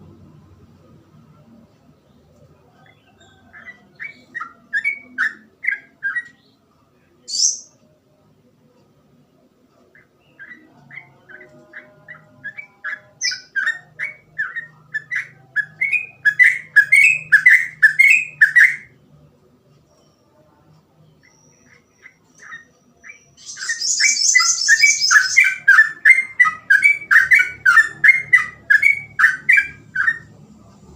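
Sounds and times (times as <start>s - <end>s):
bulbul singing rapid notes: 21.2s - 30.3s.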